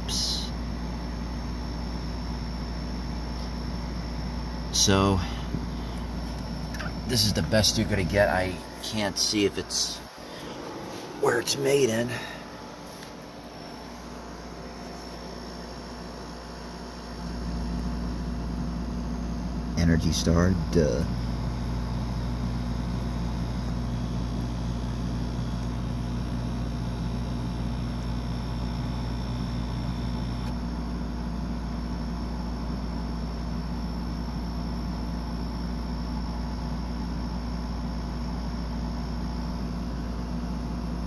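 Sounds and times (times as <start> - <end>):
dehumidifier humming: 0.0 - 41.0.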